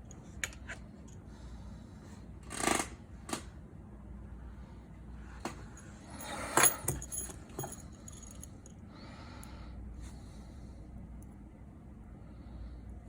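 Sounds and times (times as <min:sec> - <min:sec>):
metal tools clinking: 0:06.2 - 0:08.5.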